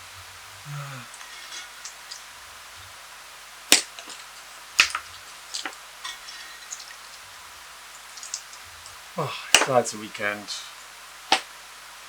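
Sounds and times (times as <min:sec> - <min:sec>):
faint ticks: 0:07.9 - 0:09.0.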